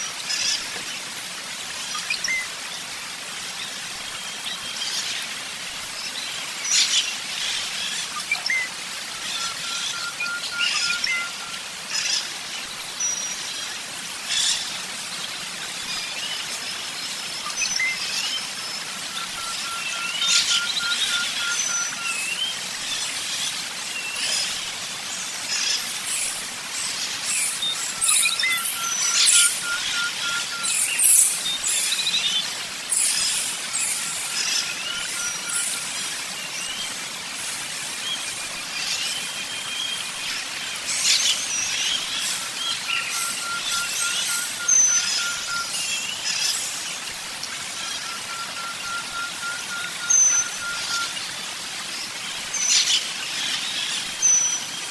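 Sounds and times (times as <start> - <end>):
birds chirping and singing: 25.6 - 37.0.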